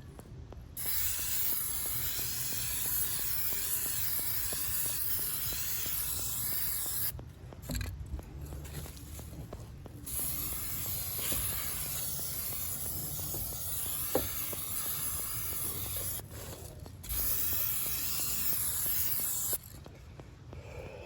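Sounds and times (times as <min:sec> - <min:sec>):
aerosol spray can spraying: 0:00.8 - 0:07.2, 0:10.0 - 0:16.2, 0:17.0 - 0:19.7.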